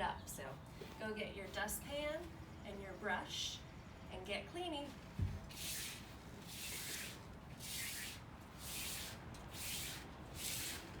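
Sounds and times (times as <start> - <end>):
hand brush sweeping birdseed: 5.5 - 10.9.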